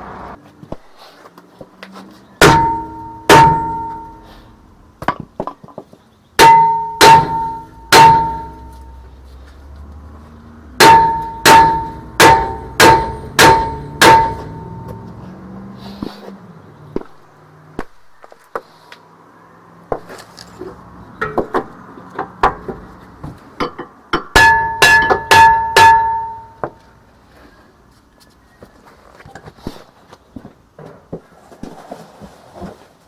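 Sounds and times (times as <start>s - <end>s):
hammer striking steel brake disc: 2.4s - 4.4s, 6.4s - 9.0s, 10.8s - 15.2s, 23.6s - 26.8s
metal disc ringing: 2.4s - 4.4s, 6.4s - 9.0s, 10.8s - 15.2s, 24.4s - 26.8s.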